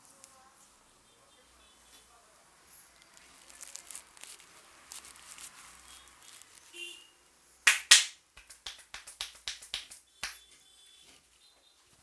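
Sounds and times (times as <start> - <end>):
hand slaps on head: 7.7 - 10.4.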